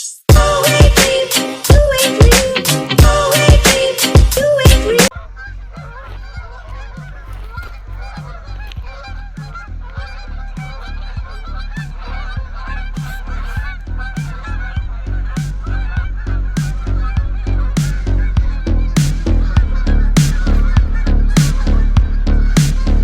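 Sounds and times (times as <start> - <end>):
loud music: 0.0 - 7.4, 8.2 - 23.0
flock of birds calling: 0.4 - 23.0
regular low thump: 5.1 - 23.0
steady low hum: 5.1 - 23.0.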